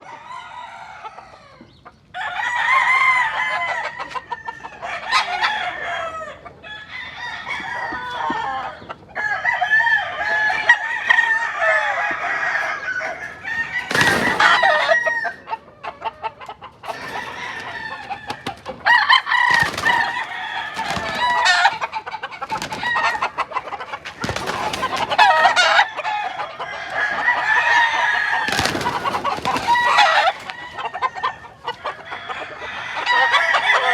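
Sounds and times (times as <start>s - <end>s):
rooster crowing: 0.0s - 15.6s, 16.8s - 33.9s
chickens clucking: 0.0s - 33.9s
sharp noises: 16.7s - 25.9s, 28.4s - 30.9s.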